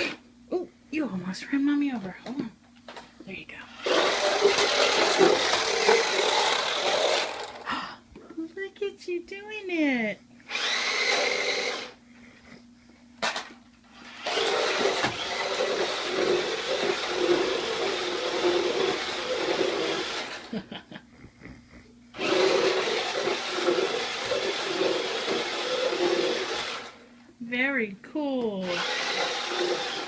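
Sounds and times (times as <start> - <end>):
toy car electric motor whirring: 3.7 - 7.7, 10.5 - 12.0, 14.0 - 20.5, 22.2 - 27.0, 28.6 - 30.0.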